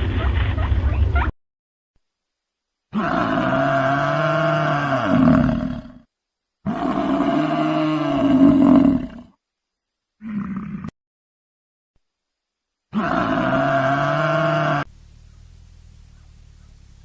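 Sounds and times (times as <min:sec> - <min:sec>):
long animal calls: 0:02.9 - 0:09.4, 0:12.9 - 0:17.0.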